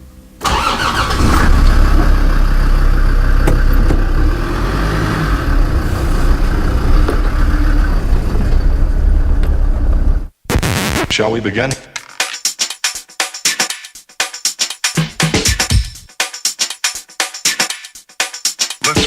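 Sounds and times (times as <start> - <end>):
car engine rumbling while driving: 1.2 - 10.4
road noise: 1.2 - 10.4.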